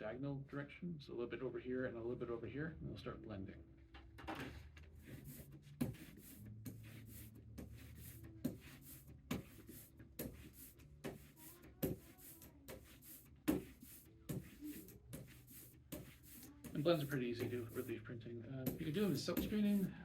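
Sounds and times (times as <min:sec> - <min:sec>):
roller rolling through sticky ink: 0:05.0 - 0:20.0.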